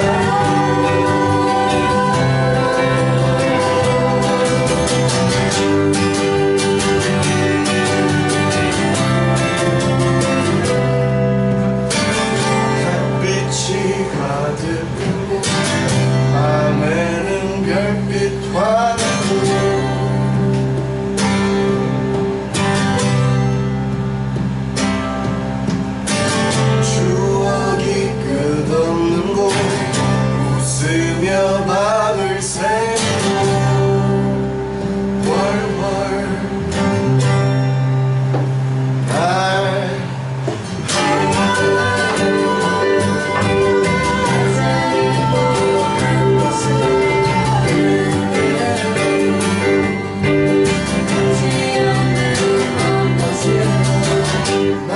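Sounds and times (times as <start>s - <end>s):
person singing: 0.0s - 6.6s, 12.6s - 15.4s, 16.2s - 20.2s, 26.8s - 34.4s, 40.9s - 54.9s
acoustic guitar: 0.0s - 54.9s.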